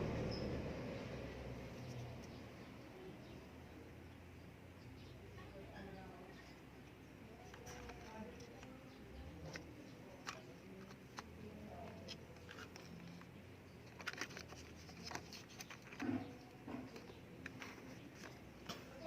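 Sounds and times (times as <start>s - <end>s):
packaging clicks and taps: 7.5s - 19.0s.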